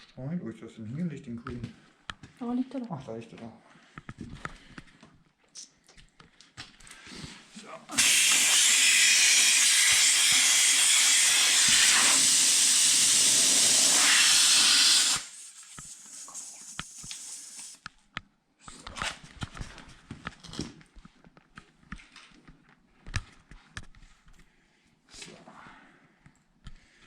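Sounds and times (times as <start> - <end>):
compressed air hissing: 7.9 - 17.8.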